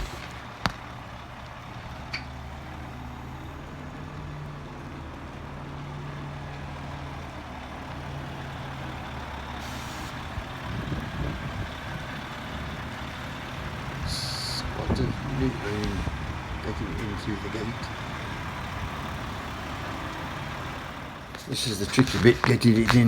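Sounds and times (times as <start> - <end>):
brief hiss: 0.0 - 0.5, 9.6 - 10.2
vehicle engine running at low revs: 0.0 - 23.0.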